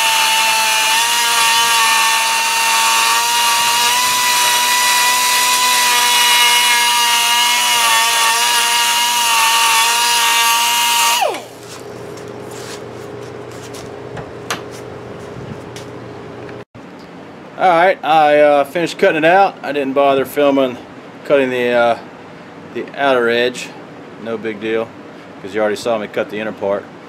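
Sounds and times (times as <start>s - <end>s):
power tool high-pitched whine: 0.0s - 11.9s.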